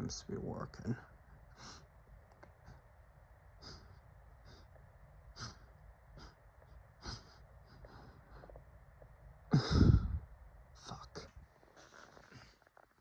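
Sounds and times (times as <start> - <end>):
person sniffing: 5.4 - 6.4.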